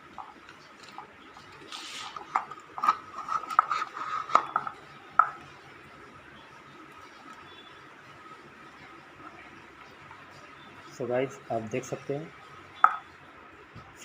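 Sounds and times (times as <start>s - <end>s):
metal clinks and taps: 12.8s - 13.1s.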